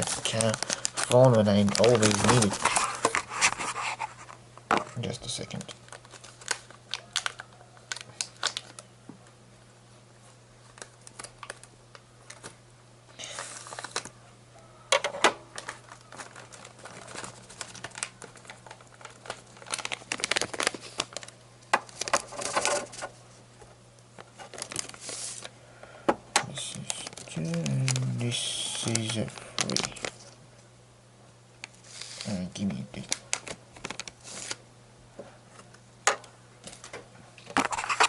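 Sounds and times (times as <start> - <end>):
rustling and crinkling: 0.0 - 8.8, 15.5 - 25.5, 36.6 - 38.0
steady low hum: 0.0 - 38.0.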